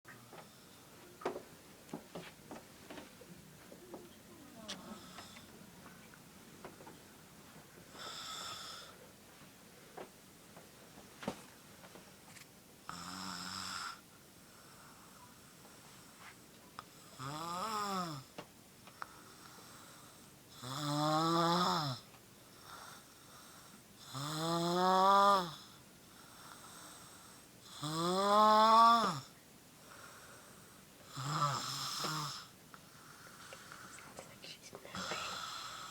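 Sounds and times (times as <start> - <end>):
person snoring: 17.2 - 18.2, 20.6 - 22.0, 31.1 - 32.5, 35.0 - 35.9.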